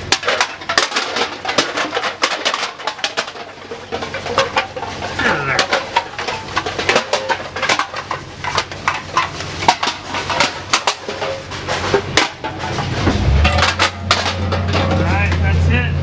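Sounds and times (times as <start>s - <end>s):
aluminum cans clattering: 0.0s - 15.5s
low engine hum: 12.8s - 16.0s.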